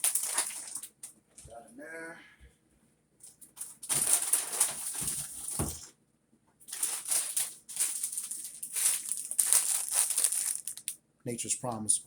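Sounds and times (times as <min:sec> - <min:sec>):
plastic bag crinkling: 0:00.0 - 0:01.0, 0:03.6 - 0:05.8, 0:06.7 - 0:11.0.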